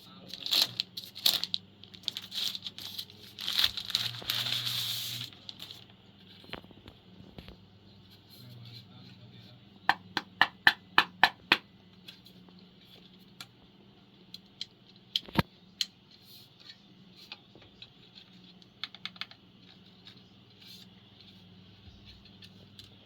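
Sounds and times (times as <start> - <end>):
faint steady hum: 0.0 - 23.0.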